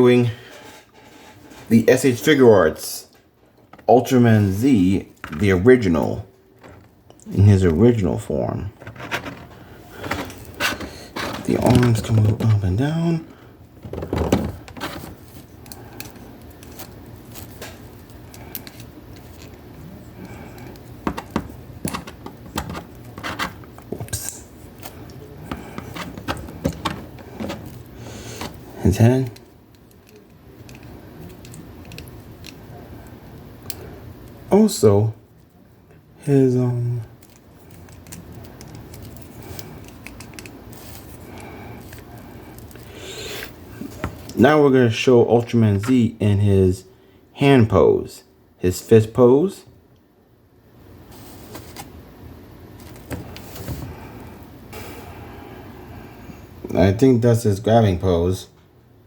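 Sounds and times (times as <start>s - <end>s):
handling rustle: 13.8s - 32.6s, 51.1s - 52.0s.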